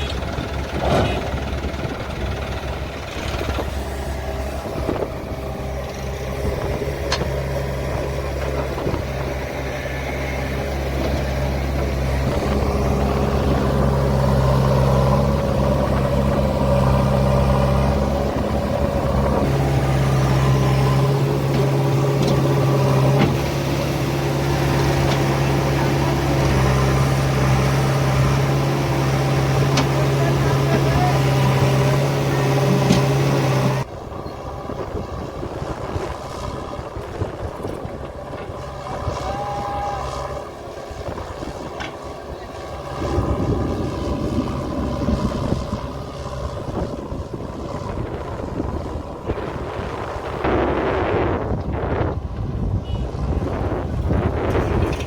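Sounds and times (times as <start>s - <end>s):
diesel engine humming: 0.0s - 55.0s.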